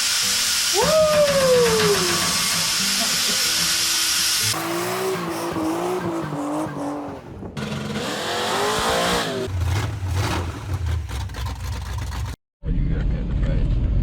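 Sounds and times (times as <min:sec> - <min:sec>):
wavering pitched squeal: 0:00.2 - 0:07.2
car engine revving: 0:04.4 - 0:12.4.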